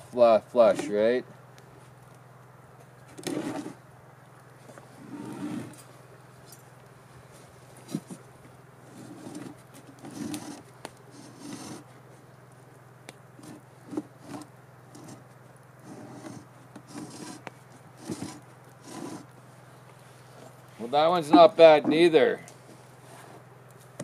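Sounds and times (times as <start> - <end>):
faint steady hum: 0.0 - 24.0
wood scraping and rubbing: 3.2 - 3.8, 4.7 - 5.9, 8.9 - 11.9, 13.4 - 19.3.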